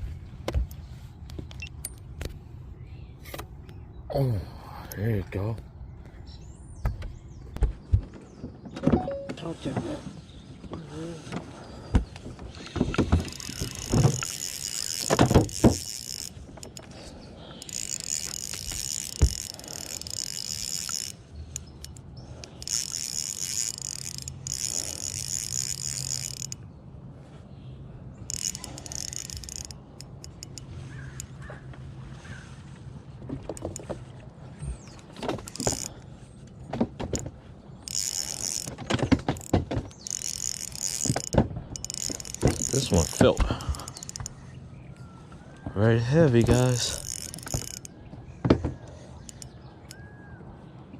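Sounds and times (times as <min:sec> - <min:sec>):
knocks and clatter on boat: 0:06.8 - 0:16.8, 0:33.2 - 0:35.9, 0:36.6 - 0:37.4, 0:38.4 - 0:44.4, 0:46.4 - 0:48.9
fishing reel whirring: 0:13.1 - 0:26.6, 0:28.2 - 0:31.4, 0:34.8 - 0:36.0, 0:37.8 - 0:38.8, 0:39.4 - 0:44.5, 0:46.3 - 0:48.0, 0:49.0 - 0:50.4.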